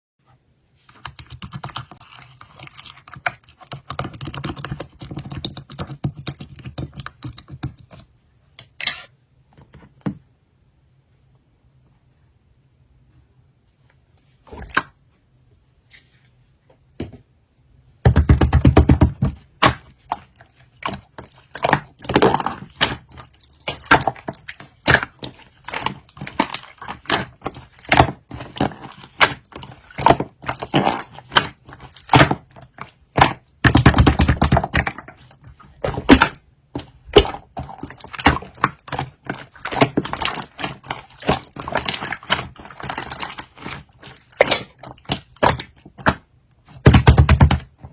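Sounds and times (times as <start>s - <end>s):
slime squishing with sticky clicks: 18.2s - 47.9s.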